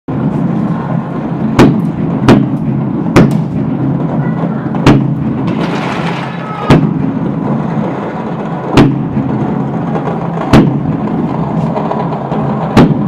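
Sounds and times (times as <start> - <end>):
loud fireworks bangs: 0.1 - 13.0
faint firework cracks: 4.7 - 7.0.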